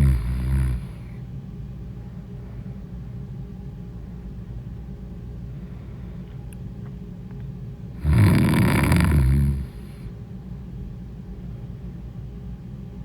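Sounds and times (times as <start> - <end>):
woman snoring: 0.0 - 1.1, 8.0 - 10.0.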